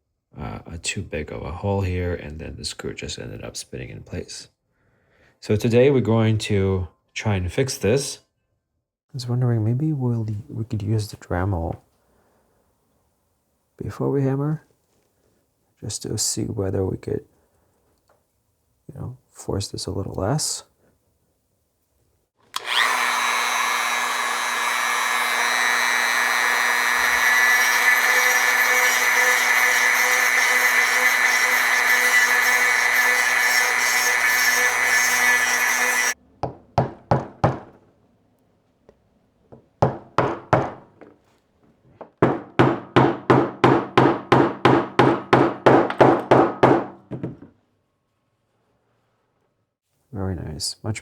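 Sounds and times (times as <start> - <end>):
rotary tool grinding plastic: 22.5 - 36.2.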